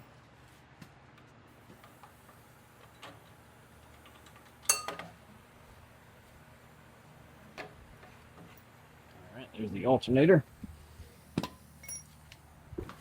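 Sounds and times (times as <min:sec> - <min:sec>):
sharp metallic clink: 0:04.7 - 0:05.0, 0:11.8 - 0:12.2
metal tools clicking and knocking: 0:11.4 - 0:12.2.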